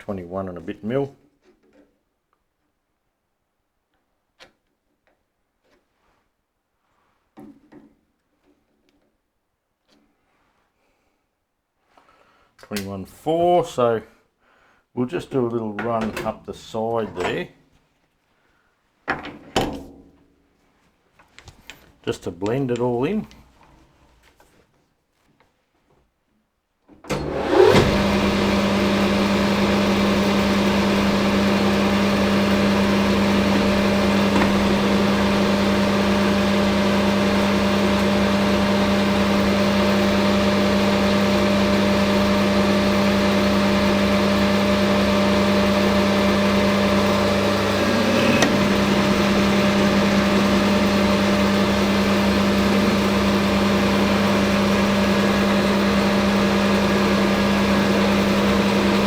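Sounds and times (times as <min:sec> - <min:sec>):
metal lathe running: 0:27.2 - 0:59.0.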